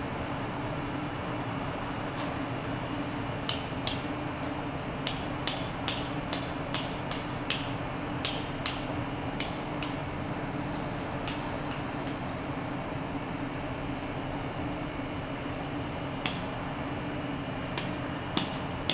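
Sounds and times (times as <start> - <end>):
steady low hum: 0.0 - 18.9
hammer striking chisel on stone: 5.1 - 8.8, 17.8 - 18.9.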